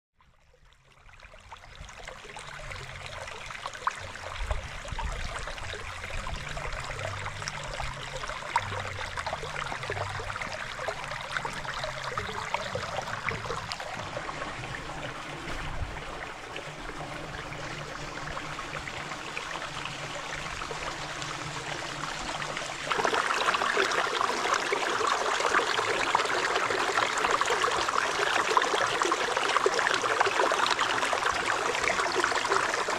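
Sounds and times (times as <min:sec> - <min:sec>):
river water flowing and splashing: 0:00.4 - 0:32.9
low rumble: 0:04.0 - 0:22.9.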